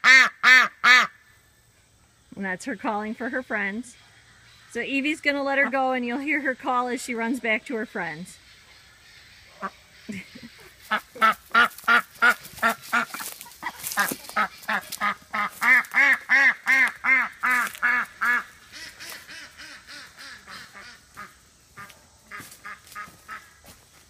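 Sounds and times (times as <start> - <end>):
duck quacking: 0.0 - 1.2, 9.0 - 23.6.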